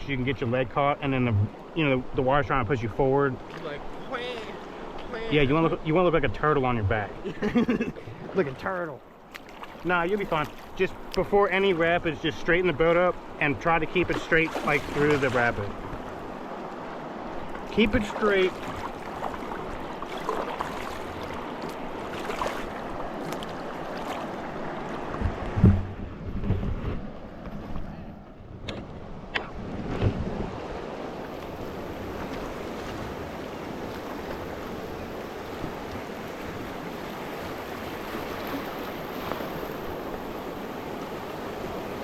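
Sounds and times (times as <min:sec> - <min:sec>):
river whitewater rushing: 0:17.6 - 0:25.0
low thumps: 0:25.1 - 0:26.9.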